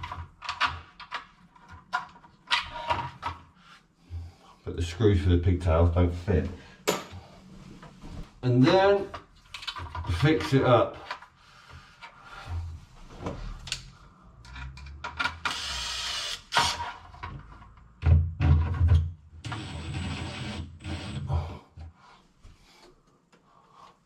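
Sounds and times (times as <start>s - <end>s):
screwdriver whirring with high whine: 15.2s - 16.9s, 19.5s - 21.6s.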